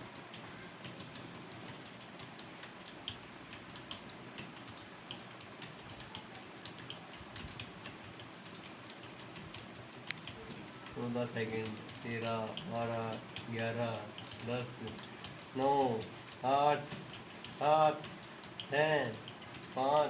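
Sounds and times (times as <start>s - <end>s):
keyboard typing clicks: 0.0s - 20.0s.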